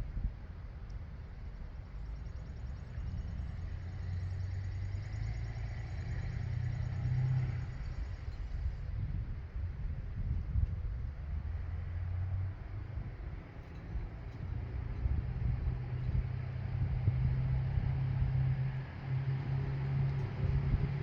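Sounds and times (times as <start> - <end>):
wind rumble on microphone: 0.0 - 21.0
vehicle driving past: 2.2 - 9.0, 11.4 - 21.0.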